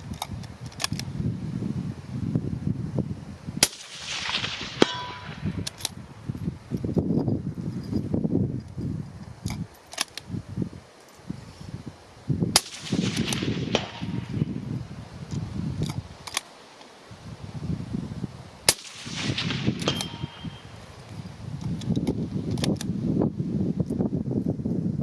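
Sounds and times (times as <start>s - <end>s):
rifle shots: 3.6s - 5.9s, 12.6s - 14.6s, 18.7s - 20.9s.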